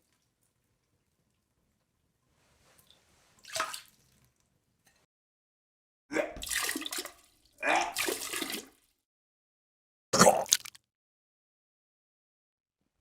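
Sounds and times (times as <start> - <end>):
person vomiting: 6.1 - 6.5, 7.6 - 8.1, 10.2 - 10.8
liquid splashing: 10.2 - 10.8.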